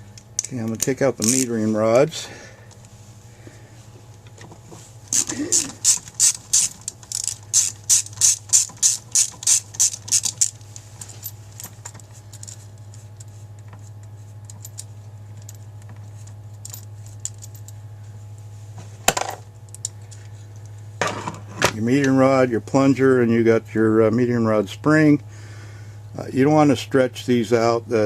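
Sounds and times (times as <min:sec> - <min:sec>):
ratchet clicking: 0:00.4 - 0:01.5, 0:05.1 - 0:10.6.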